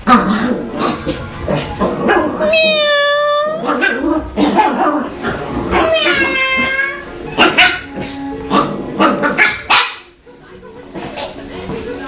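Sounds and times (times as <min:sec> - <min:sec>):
puppy whining: 0:00.9 - 0:08.7
puppy yapping: 0:05.7 - 0:07.9.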